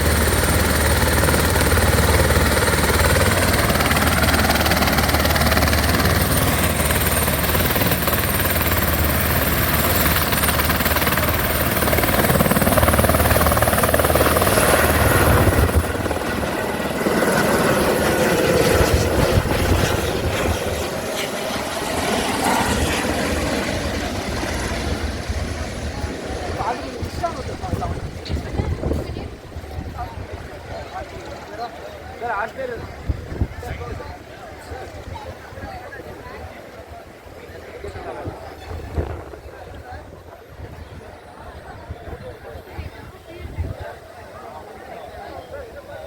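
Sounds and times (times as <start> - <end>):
helicopter rotor beating: 0.0 - 31.6
helicopter turbine whine: 0.0 - 46.0.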